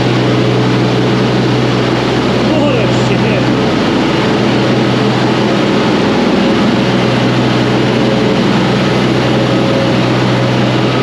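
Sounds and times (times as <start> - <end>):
diesel engine drone: 0.0 - 11.0.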